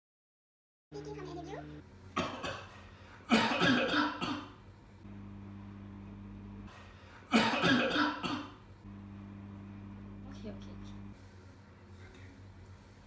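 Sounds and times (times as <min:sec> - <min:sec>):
steady low hum: 0:01.0 - 0:13.0
person coughing: 0:03.3 - 0:04.5, 0:07.3 - 0:08.6.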